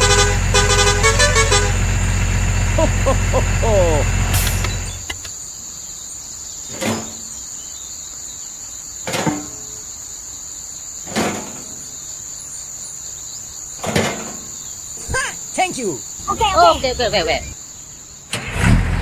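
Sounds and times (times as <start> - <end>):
low motor hum: 0.0 - 5.2
insects chirring: 1.1 - 18.3.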